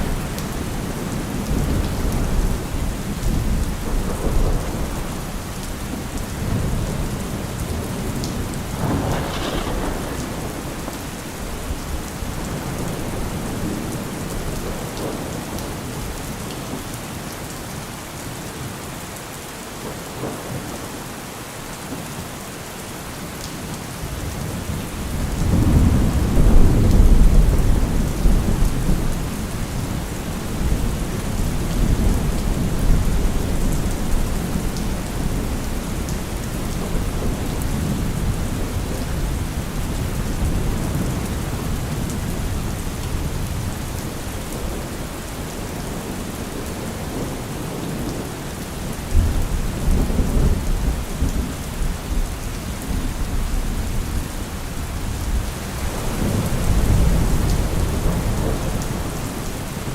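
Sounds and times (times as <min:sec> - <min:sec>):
rolling thunder: 0:00.0 - 0:15.4, 0:24.3 - 0:45.0
steady rain: 0:00.0 - 0:59.9.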